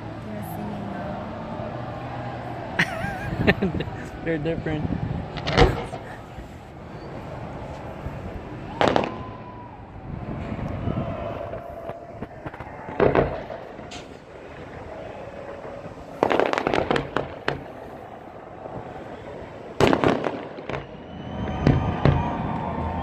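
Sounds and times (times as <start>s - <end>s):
crackling firework bursts: 0.0s - 23.0s
firework shells bursting: 10.2s - 22.4s.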